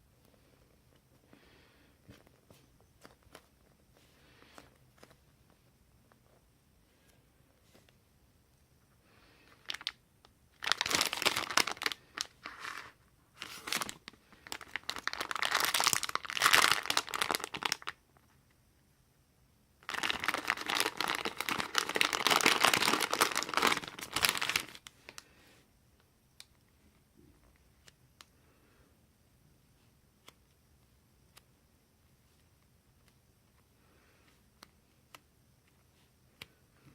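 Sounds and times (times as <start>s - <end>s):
plastic packaging crinkling: 9.5s - 10.0s, 10.6s - 18.0s, 19.8s - 25.2s.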